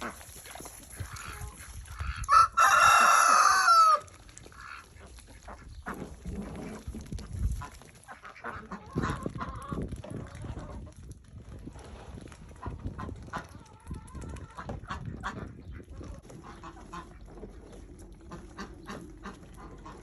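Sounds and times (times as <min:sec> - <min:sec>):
chickens clucking: 0:00.0 - 0:20.0
rooster crowing: 0:02.3 - 0:04.1.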